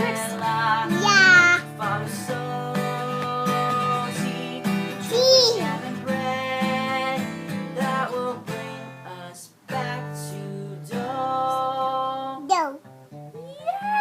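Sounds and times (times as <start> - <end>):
acoustic guitar strumming: 0.0 - 13.9
person singing long notes: 0.8 - 2.6.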